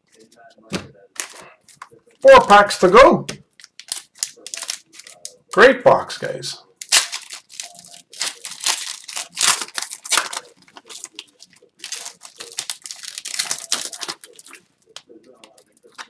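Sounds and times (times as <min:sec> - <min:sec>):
plastic wrapper tearing and crinkling: 0:03.5 - 0:05.5, 0:06.8 - 0:15.0.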